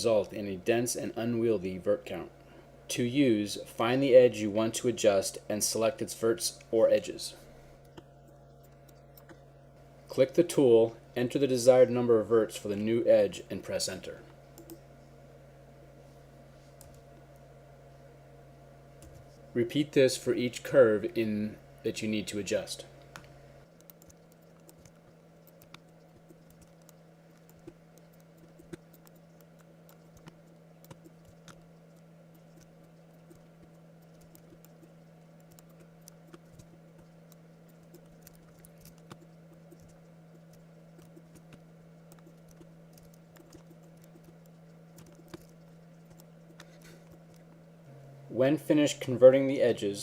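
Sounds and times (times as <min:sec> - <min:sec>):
low electrical hum: 0:00.0 - 0:50.0
keyboard and mouse clicks: 0:23.1 - 0:47.6.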